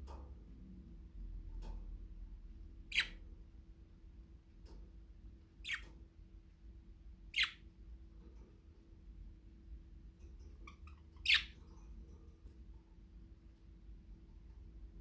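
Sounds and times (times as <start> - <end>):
budgerigar chirping: 2.9 - 3.2, 5.6 - 5.9, 7.3 - 7.6, 10.6 - 11.6.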